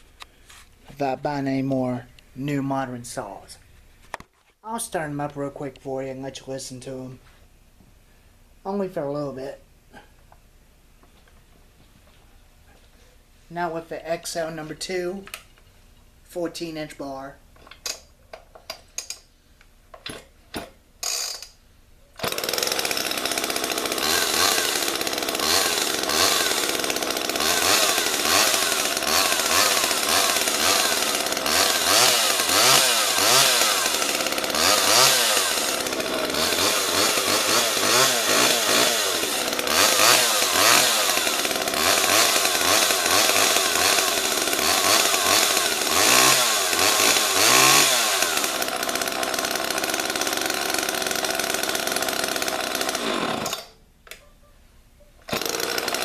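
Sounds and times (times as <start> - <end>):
chainsaw recoil starter pulls: 20.0 - 21.6, 22.2 - 53.8, 55.2 - 56.0
chainsaw engine revving: 21.0 - 21.5, 22.2 - 53.8, 55.3 - 56.0.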